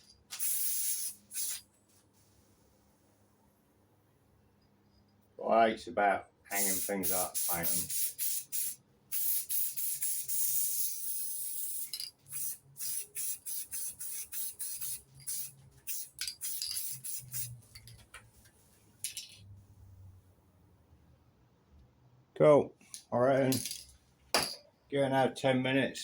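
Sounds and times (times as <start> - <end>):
spray paint hissing from can: 0.0 - 1.6, 6.5 - 18.1.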